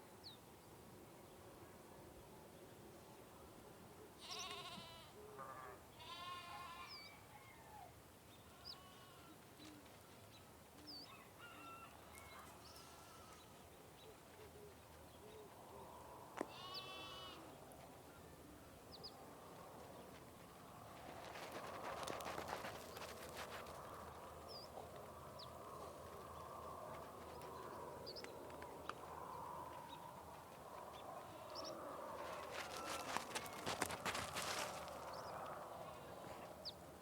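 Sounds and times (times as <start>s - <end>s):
livestock bleating: 4.2s - 7.1s, 8.5s - 9.4s, 12.6s - 13.6s, 16.4s - 17.6s, 31.3s - 31.7s, 32.4s - 33.7s, 35.8s - 36.5s
small birds chirping: 18.7s - 36.8s.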